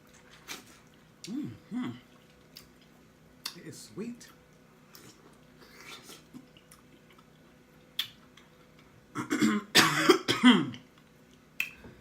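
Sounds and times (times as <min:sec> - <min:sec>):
person coughing: 0:09.2 - 0:10.8.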